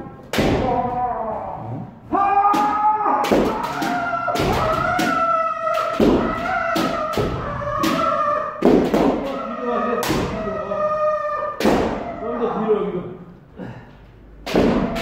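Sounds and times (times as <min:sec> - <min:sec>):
bamboo swords striking: 0:00.2 - 0:00.9, 0:02.4 - 0:10.4, 0:11.6 - 0:12.1, 0:14.4 - 0:15.0
players shouting: 0:02.1 - 0:12.8.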